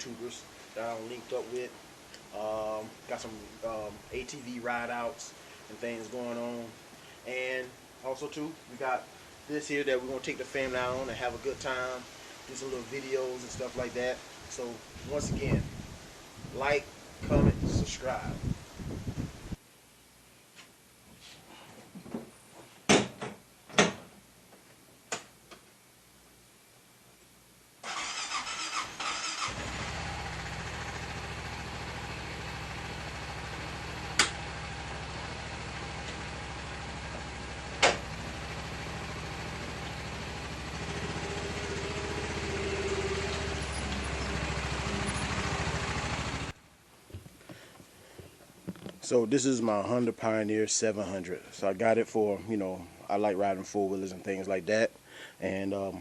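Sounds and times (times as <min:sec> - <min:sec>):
engine cranking and idling: 0:27.8 - 0:46.6.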